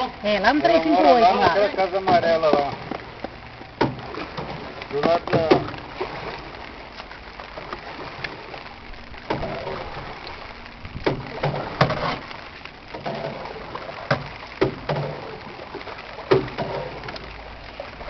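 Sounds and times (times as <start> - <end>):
paddle strokes splashing: 0.0 - 18.0
water sloshing: 0.0 - 18.0.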